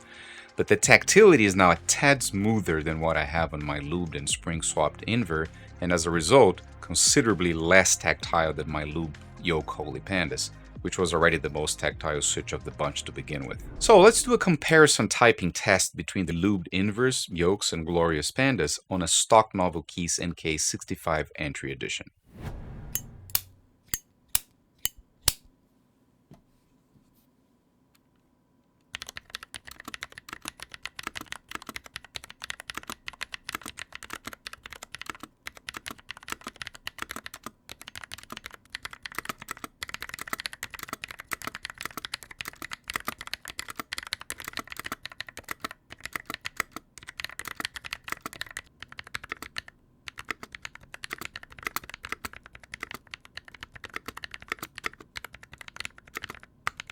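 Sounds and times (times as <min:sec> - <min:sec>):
typing on mechanical keyboard: 0:28.9 - 0:56.9.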